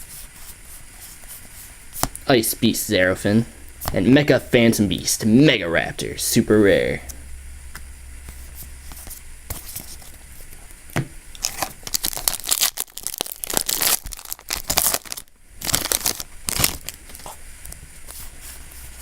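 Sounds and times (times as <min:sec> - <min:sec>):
foil wrapper tearing and crinkling: 0:11.4 - 0:17.3.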